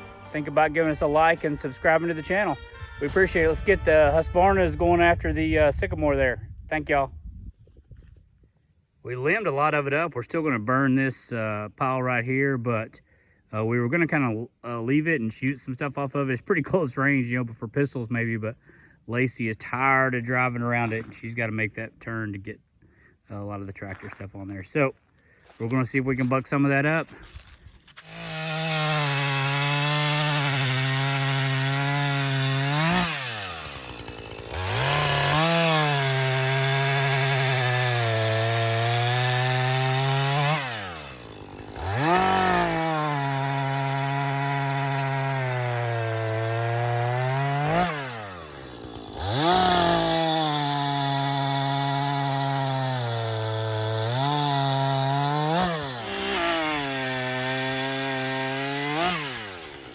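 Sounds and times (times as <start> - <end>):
chainsaw cutting at full revs: 0.0 - 4.6, 26.2 - 59.9.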